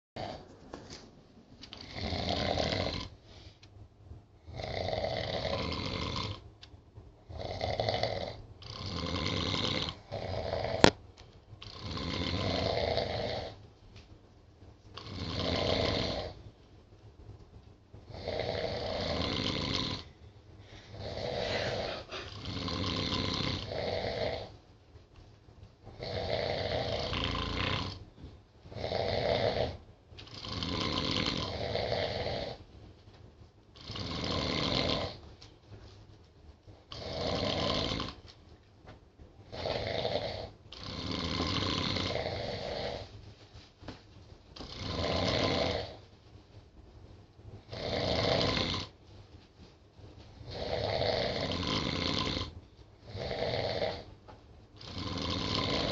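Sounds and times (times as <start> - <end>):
people snoring: 1.8 - 3.2, 4.5 - 6.4, 7.3 - 11.0, 11.6 - 13.6, 15.0 - 16.4, 18.1 - 20.1, 20.9 - 24.5, 25.9 - 28.0, 28.7 - 32.6, 33.8 - 35.2, 36.9 - 38.2, 39.5 - 43.1, 44.6 - 46.0, 47.7 - 49.0, 50.4 - 54.1, 54.8 - 55.9.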